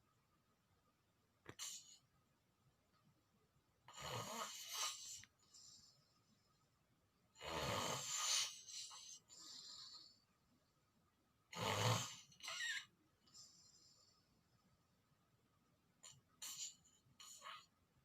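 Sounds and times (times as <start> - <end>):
person snoring: 7.4 - 9.2, 11.6 - 12.8.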